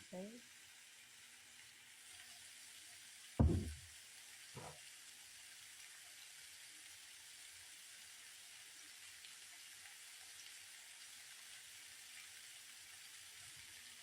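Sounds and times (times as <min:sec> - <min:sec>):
vegetables sizzling in a frying pan: 0:00.0 - 0:14.0
loud knock: 0:03.4 - 0:03.8.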